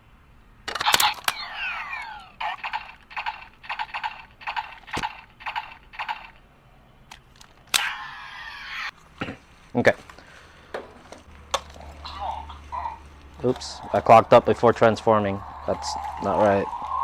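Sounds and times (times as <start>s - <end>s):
toy sharp click: 0.7s - 6.4s
electronic falling sweep: 13.6s - 17.0s.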